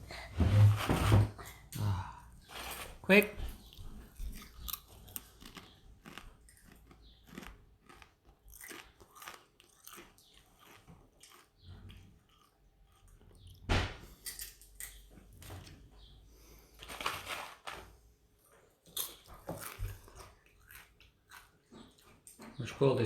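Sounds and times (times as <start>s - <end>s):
person chewing potato chips: 2.5s - 13.7s, 18.4s - 22.4s.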